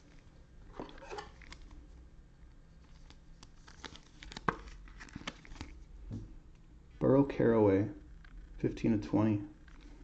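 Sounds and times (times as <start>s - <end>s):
trading cards clicking and rustling: 2.9s - 5.8s.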